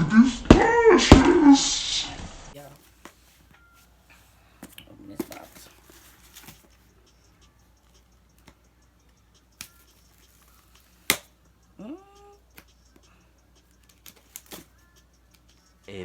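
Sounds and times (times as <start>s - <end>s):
box clicks and taps: 4.6s - 5.7s, 9.6s - 11.3s.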